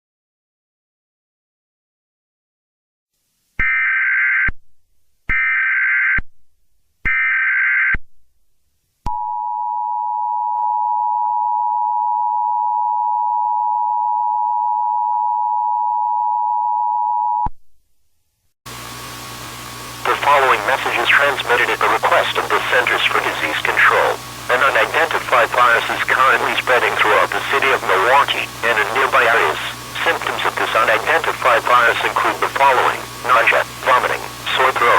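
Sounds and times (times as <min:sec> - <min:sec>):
broadcast hum and hiss: 0:18.7 - 0:34.9
buzzing data bursts: 0:20.0 - 0:34.9.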